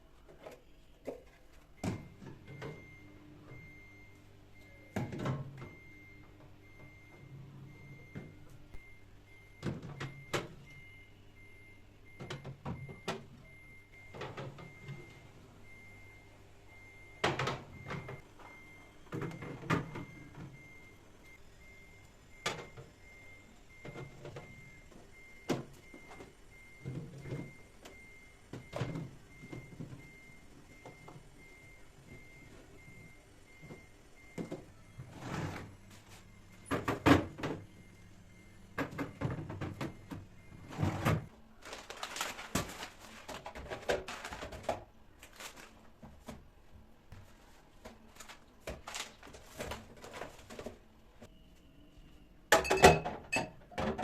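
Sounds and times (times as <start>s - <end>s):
objects and containers clattering: 38.8s - 45.8s, 52.5s - 54.0s.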